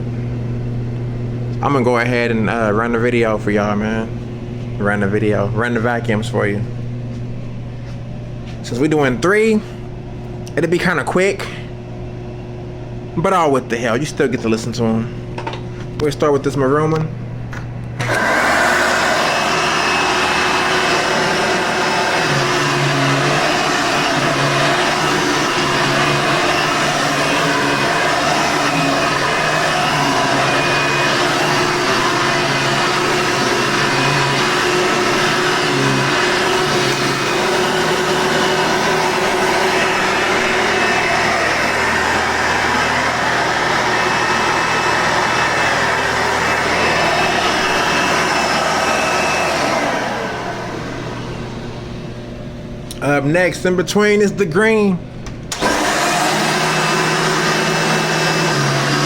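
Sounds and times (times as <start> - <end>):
upright vacuum cleaner running: 17.5 - 53.2, 55.3 - 59.0
vacuum motor winding down: 17.9 - 52.3, 55.5 - 59.0.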